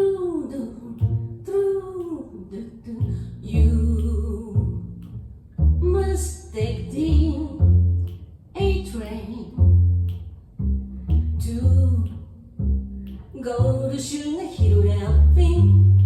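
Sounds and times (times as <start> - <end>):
woman singing: 0.0 - 4.9, 5.8 - 7.8, 8.6 - 9.6, 11.4 - 12.4, 13.3 - 16.0
plucked double bass: 1.0 - 1.8, 3.0 - 16.0.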